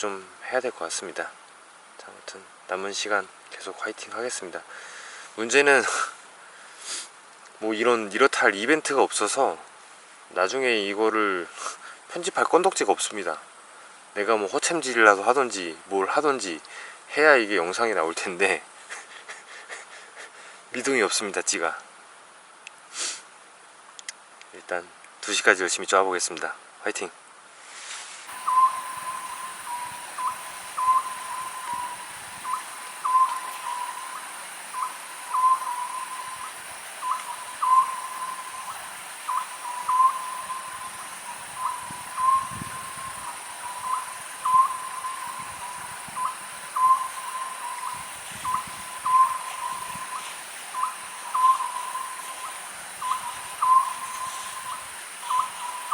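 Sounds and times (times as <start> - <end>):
owl hooting: 28.3 - 55.9.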